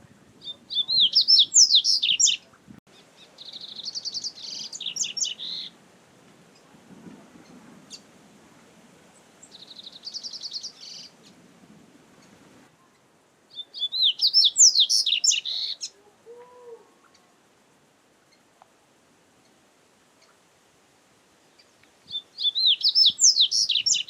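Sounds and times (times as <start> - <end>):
bird trilling and whistling: 13.6 - 15.8, 22.1 - 24.0.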